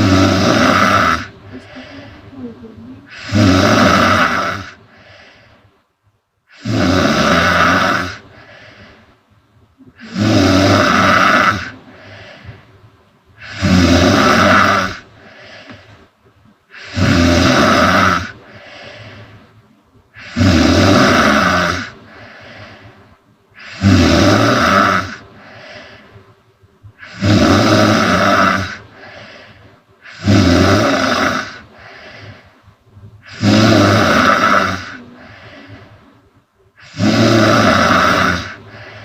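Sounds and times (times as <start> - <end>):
woman snoring loudly: 0.0 - 2.2, 3.0 - 4.8, 6.5 - 8.5, 9.9 - 12.2, 13.4 - 15.1, 16.7 - 18.6, 20.2 - 22.4, 23.6 - 25.2, 27.0 - 29.2, 30.0 - 32.3, 33.2 - 35.7, 36.8 - 39.0
soft breath: 1.3 - 3.4, 4.7 - 6.0, 8.2 - 10.2, 11.7 - 13.7, 15.0 - 17.0, 18.4 - 20.4, 21.9 - 23.8, 25.2 - 27.2, 28.8 - 30.3, 31.6 - 33.5, 34.2 - 37.0, 38.4 - 39.0.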